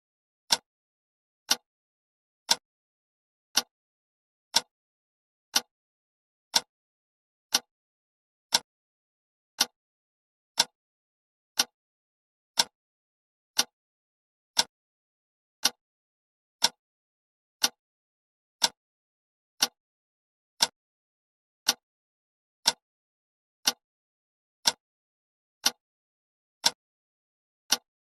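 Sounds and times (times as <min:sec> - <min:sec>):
clock ticking: 0:00.5 - 0:00.7, 0:01.5 - 0:01.7, 0:02.5 - 0:02.7, 0:03.5 - 0:03.7, 0:04.5 - 0:04.7, 0:05.5 - 0:05.7, 0:07.5 - 0:07.7, 0:09.6 - 0:09.8, 0:10.6 - 0:10.8, 0:11.6 - 0:11.8, 0:12.6 - 0:12.8, 0:13.6 - 0:13.8, 0:15.6 - 0:15.8, 0:16.6 - 0:16.8, 0:17.6 - 0:17.8, 0:19.6 - 0:19.8, 0:22.6 - 0:22.8, 0:23.6 - 0:23.8, 0:27.6 - 0:27.9.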